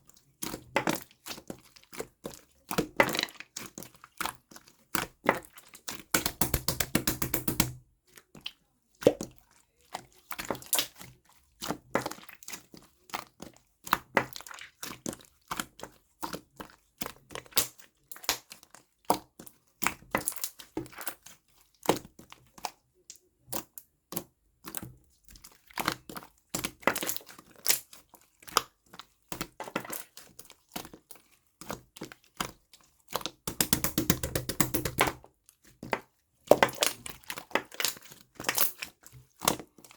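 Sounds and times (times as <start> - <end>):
slime squeezed clicking and popping: 6.2 - 7.8, 33.5 - 35.2.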